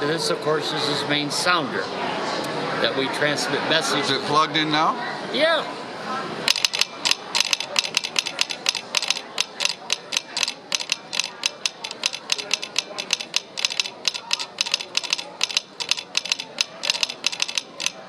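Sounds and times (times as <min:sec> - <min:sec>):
telegraph sounder clicking: 0:06.5 - 0:18.0.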